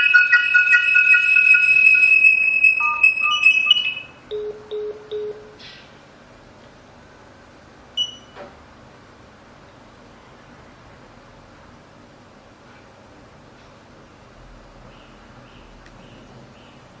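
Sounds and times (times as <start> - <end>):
alarm panel beeps: 0.0 - 5.6, 8.0 - 8.4.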